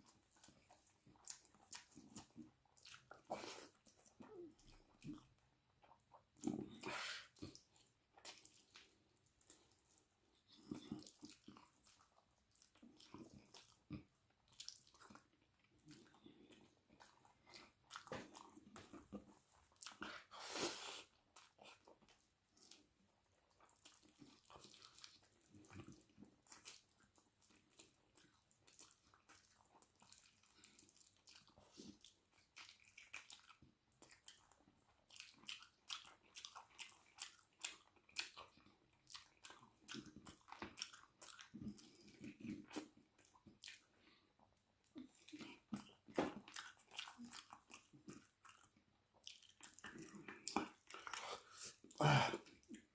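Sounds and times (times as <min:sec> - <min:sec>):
person chewing with mouth clicks: 0:00.0 - 0:52.9.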